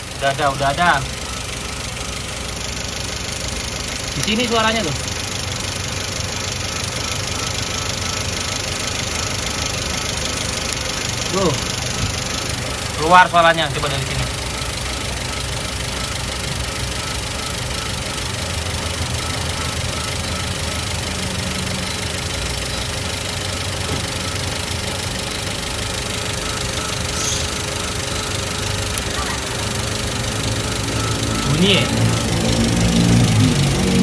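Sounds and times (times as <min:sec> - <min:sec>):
car engine idling: 0:00.0 - 0:34.0.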